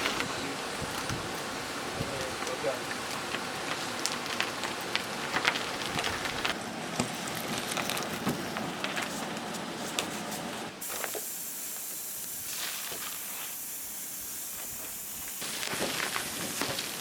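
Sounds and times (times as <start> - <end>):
steady rain hiss: 0.0 - 17.0
raindrops ticking: 0.1 - 6.6.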